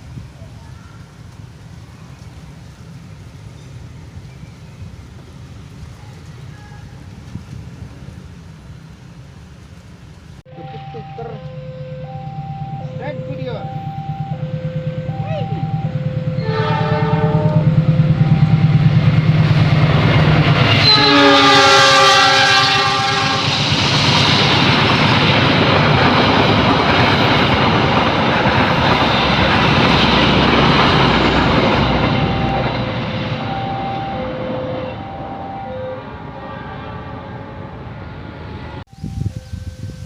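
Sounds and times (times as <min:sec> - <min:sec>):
train rumbling past: 0:00.0 - 0:40.0
locomotive engine throbbing: 0:10.5 - 0:40.0
train horn blast: 0:10.8 - 0:23.7, 0:29.2 - 0:40.0
wheels clickety-clack: 0:22.8 - 0:34.0.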